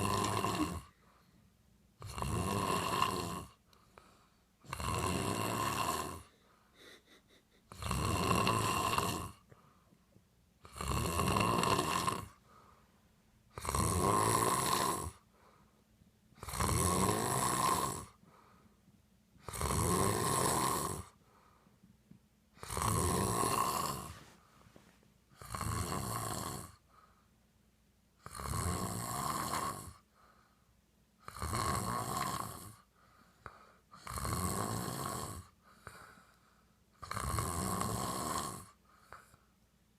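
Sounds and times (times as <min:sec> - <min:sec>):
man snoring: 0:00.0 - 0:01.0, 0:02.0 - 0:03.6, 0:04.6 - 0:06.3, 0:07.7 - 0:09.5, 0:10.6 - 0:12.4, 0:13.5 - 0:15.3, 0:16.4 - 0:18.2, 0:19.4 - 0:21.2, 0:22.6 - 0:24.3, 0:25.3 - 0:26.8, 0:28.2 - 0:30.0, 0:31.2 - 0:36.2, 0:37.0 - 0:39.3
quiet breaths: 0:00.0 - 0:39.9.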